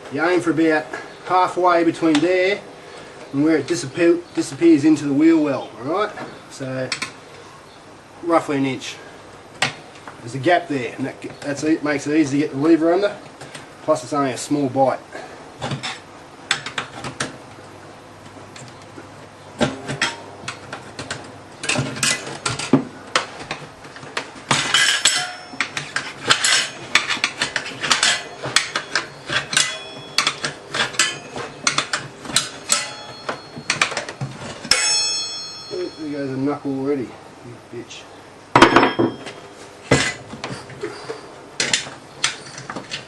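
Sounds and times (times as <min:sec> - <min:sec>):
tyre levers clinking on wheel rim: 0:19.6 - 0:36.2.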